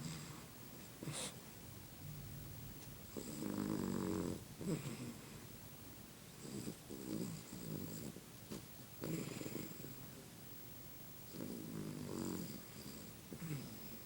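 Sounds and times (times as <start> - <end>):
dog snoring: 0.0 - 1.4, 3.1 - 5.5, 6.3 - 10.0, 11.3 - 14.0.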